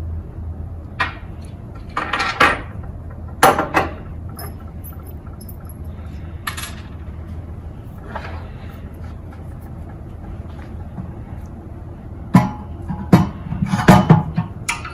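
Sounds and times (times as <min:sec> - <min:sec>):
steady low hum: 0:00.0 - 0:14.9
metal tools clattering: 0:03.8 - 0:05.9.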